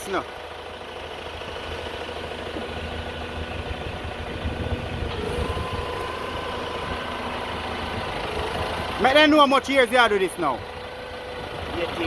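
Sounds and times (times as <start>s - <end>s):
machinery engine rumbling: 0.0s - 12.0s
thin whine: 5.1s - 9.6s.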